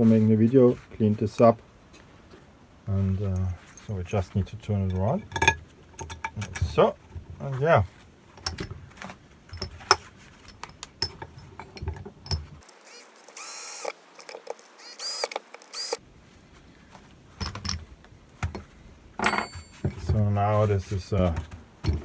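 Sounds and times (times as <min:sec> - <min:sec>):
steel vise parts clinking: 0:03.0 - 0:12.6, 0:17.4 - 0:22.0.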